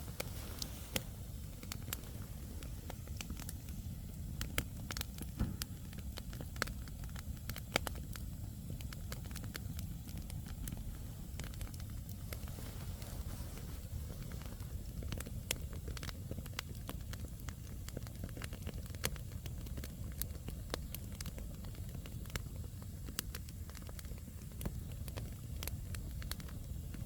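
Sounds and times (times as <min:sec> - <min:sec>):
burning logs crackling and popping: 0:00.0 - 0:27.0
low fire rumble: 0:00.0 - 0:27.0.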